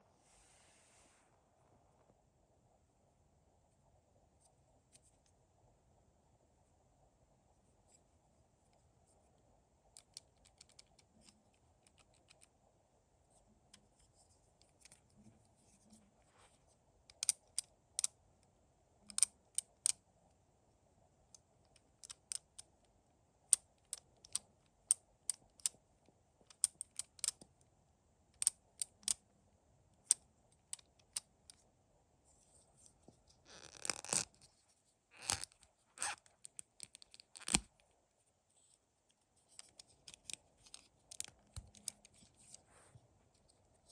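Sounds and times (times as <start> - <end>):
plastic parts clicking: 17.1 - 18.1, 23.5 - 25.8, 26.5 - 27.4.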